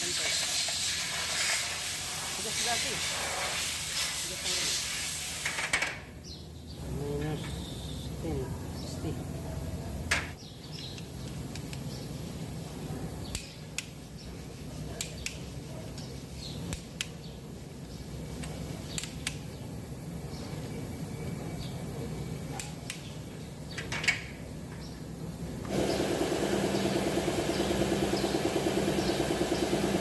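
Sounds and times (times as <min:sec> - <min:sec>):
steady low hum: 0:25.0 - 0:30.0.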